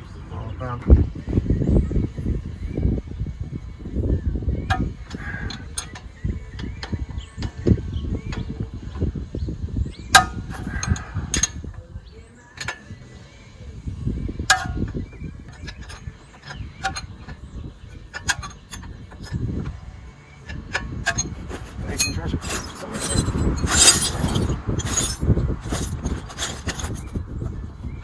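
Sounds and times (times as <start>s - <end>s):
hand tools clicking on metal: 10.2s - 11.5s, 14.5s - 14.8s, 18.1s - 19.4s, 20.5s - 27.2s
rattling knocking tool strokes: 20.5s - 27.2s.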